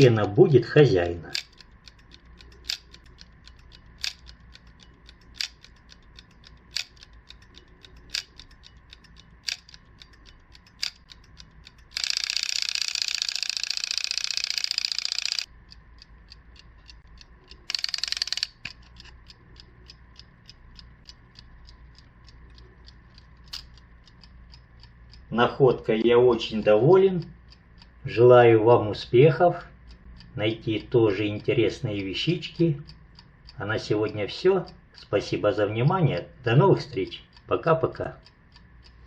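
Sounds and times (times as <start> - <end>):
alarm clock ticking: 0.0 - 39.0
alarm clock bell ringing: 12.0 - 15.5, 17.7 - 18.4.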